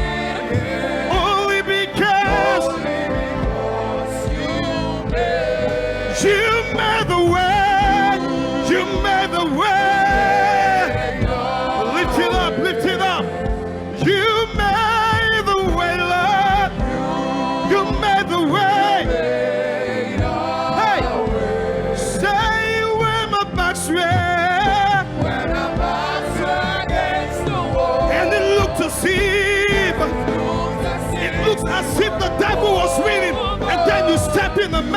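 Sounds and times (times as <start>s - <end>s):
gospel singing with vibrato: 0.0s - 34.9s
musical accompaniment: 0.0s - 34.9s.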